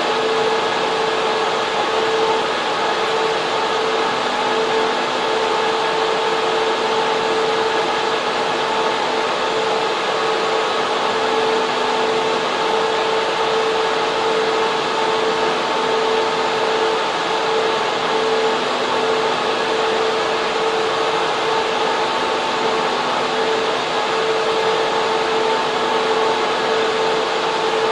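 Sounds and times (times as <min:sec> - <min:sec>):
rush of cooling air: 0:00.0 - 0:27.9
server fans whining: 0:00.0 - 0:27.9.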